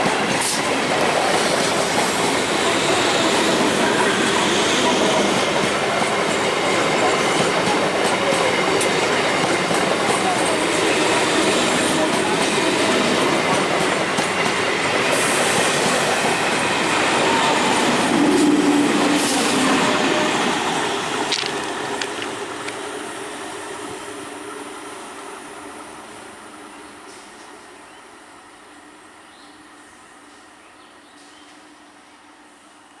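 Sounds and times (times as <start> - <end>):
train wheels rushing and clattering: 0.0 - 24.0.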